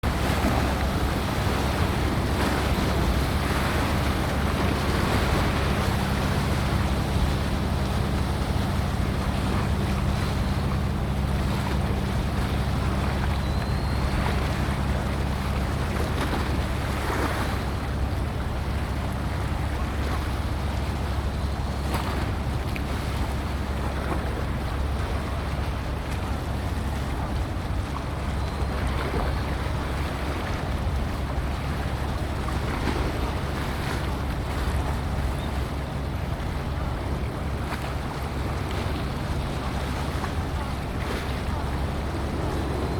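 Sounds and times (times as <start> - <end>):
ship engine drone: 0.0 - 42.9
water noise: 0.0 - 42.9
wind on microphone: 26.5 - 42.9.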